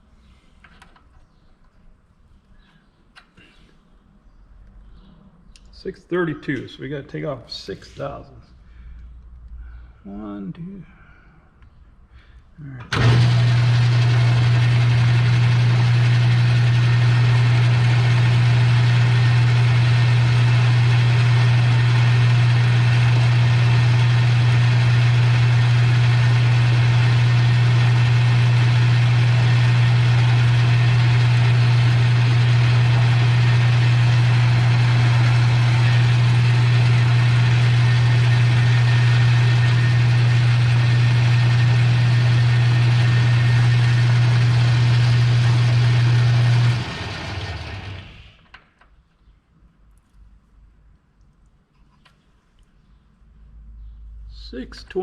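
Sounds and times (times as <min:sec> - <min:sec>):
metal lathe running: 0:12.9 - 0:48.2.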